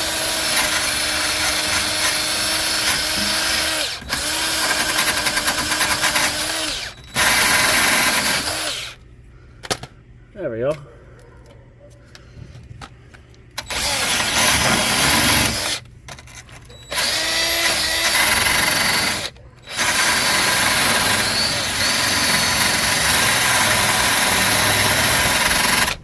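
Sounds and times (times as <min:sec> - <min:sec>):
handheld power tool grinding: 0:00.0 - 0:09.0, 0:13.6 - 0:26.0.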